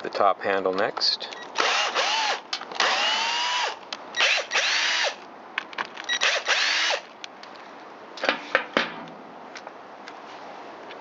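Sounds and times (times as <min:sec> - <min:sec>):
cordless drill spinning: 0:01.6 - 0:05.2, 0:06.1 - 0:07.1.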